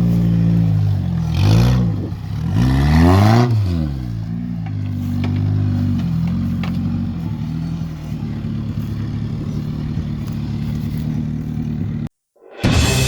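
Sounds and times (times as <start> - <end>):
engine running under load: 0.0 - 12.1
short knocks and clatters: 4.6 - 7.0.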